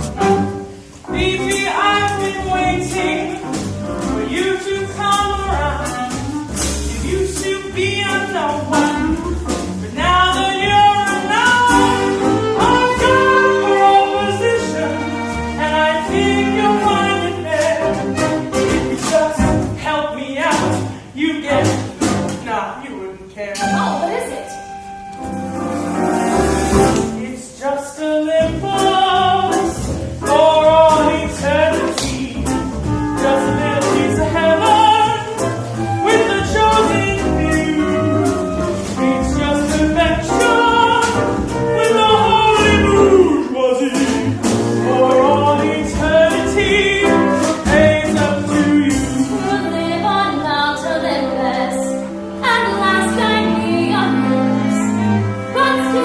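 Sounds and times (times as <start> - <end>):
small band playing: 0.0 - 22.5, 23.6 - 27.5, 28.3 - 56.0
steady drum beat: 28.6 - 49.6.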